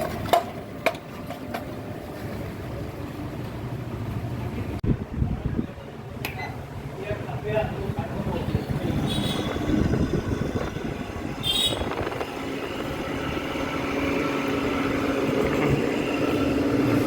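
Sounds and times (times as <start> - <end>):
air conditioner fan motor noise: 6.7 - 17.0.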